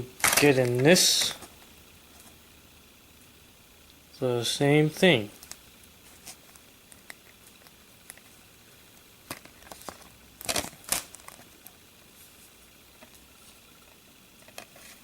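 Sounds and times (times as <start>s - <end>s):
packaging clicks and rustles: 9.3s - 11.5s.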